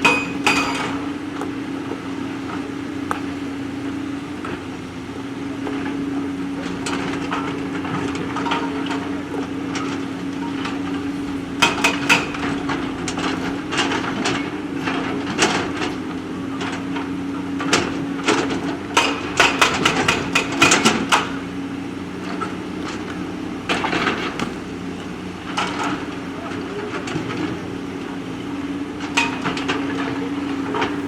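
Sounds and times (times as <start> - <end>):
diesel engine running: 0.0 - 31.0.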